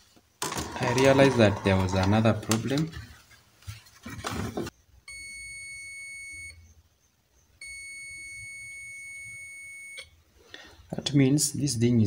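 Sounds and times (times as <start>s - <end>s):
multimeter continuity beep: 5.1s - 6.6s, 7.6s - 10.1s.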